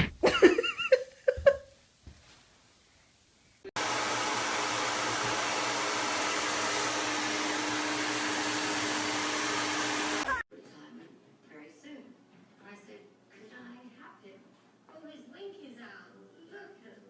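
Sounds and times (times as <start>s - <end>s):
small appliance motor blowing: 3.8s - 10.4s.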